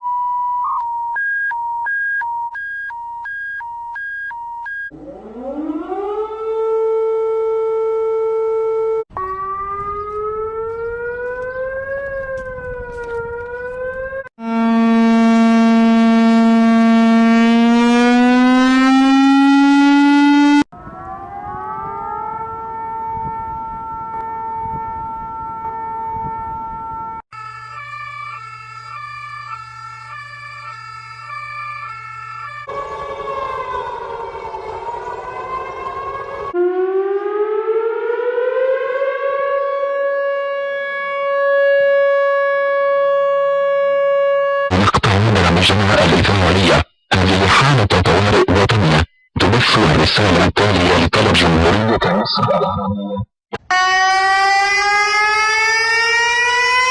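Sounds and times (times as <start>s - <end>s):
synthesized alarm tones: 14.4s - 20.6s, 27.4s - 37.0s
low hum: 32.7s - 36.6s.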